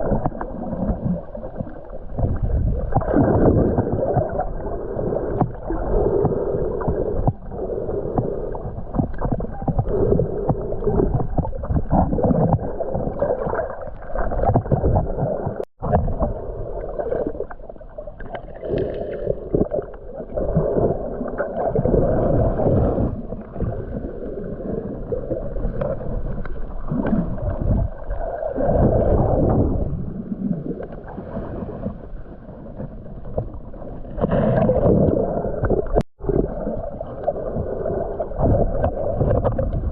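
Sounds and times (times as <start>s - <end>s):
muffled underwater sloshing and gurgling: 0.0s - 39.9s.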